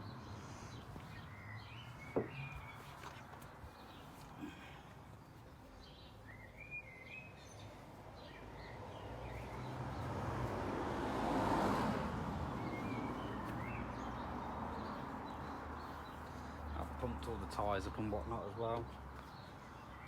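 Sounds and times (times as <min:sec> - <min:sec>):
small birds chirping: 0:00.0 - 0:20.0
passing road vehicle: 0:07.4 - 0:17.6.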